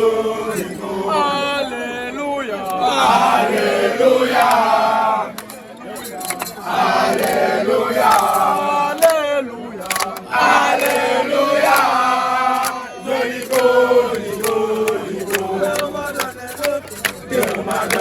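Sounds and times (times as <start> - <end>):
group of men singing and chanting: 0.0 - 18.0.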